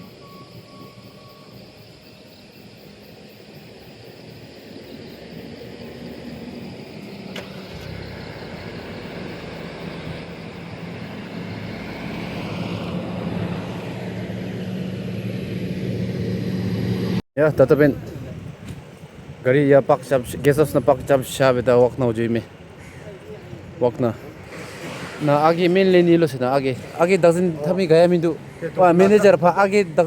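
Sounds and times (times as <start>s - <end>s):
vehicle engine: 0.0s - 17.2s
road noise: 0.0s - 30.0s.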